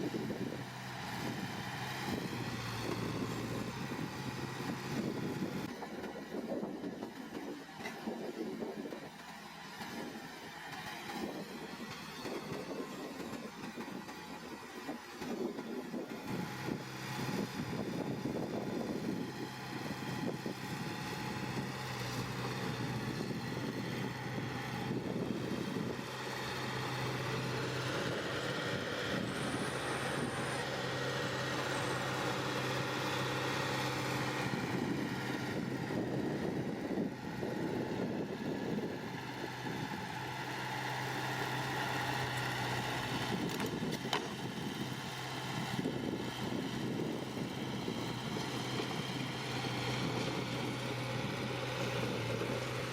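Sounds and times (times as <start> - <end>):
heavy machinery diesel engine: 0.0 - 52.9.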